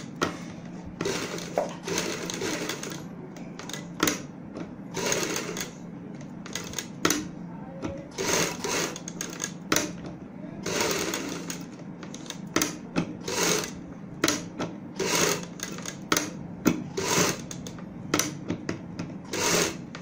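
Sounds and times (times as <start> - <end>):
steady hum: 0.0 - 20.0
sewing machine stitching: 1.0 - 3.0, 5.0 - 5.8, 8.1 - 9.9, 10.6 - 14.4, 15.0 - 16.0, 16.9 - 17.6, 19.3 - 19.9.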